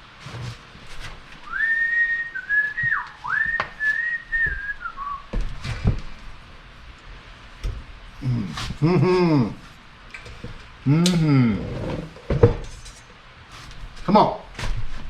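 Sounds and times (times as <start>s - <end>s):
person whistling a tune: 1.5s - 5.3s.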